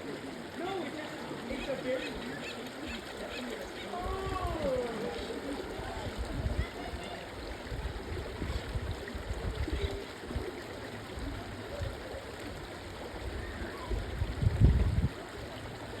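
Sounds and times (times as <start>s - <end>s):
flowing water rushing: 0.0s - 16.0s
wind gusts on microphone: 5.8s - 7.0s, 7.6s - 10.5s, 13.3s - 15.2s.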